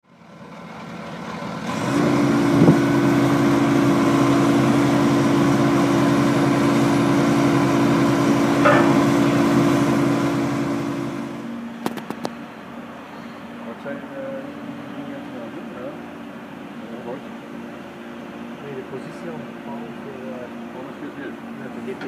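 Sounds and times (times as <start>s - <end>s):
excavator diesel engine running: 0.1s - 22.0s
short knock: 8.6s - 9.4s.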